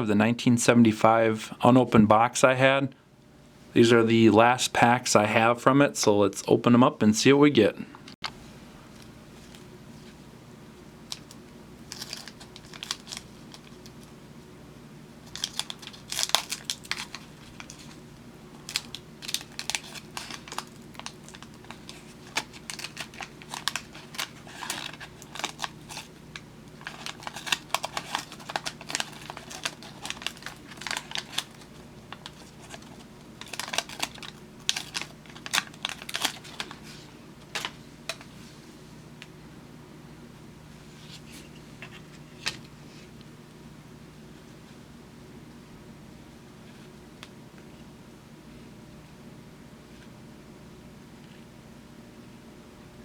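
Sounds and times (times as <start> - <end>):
wax paper crinkling and tearing: 11.1 - 14.1, 15.2 - 38.3.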